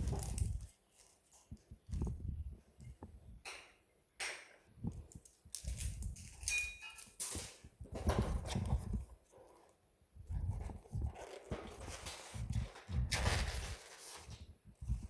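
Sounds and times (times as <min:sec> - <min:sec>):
cardboard and plastic rustling: 0:00.0 - 0:02.4, 0:07.3 - 0:15.0.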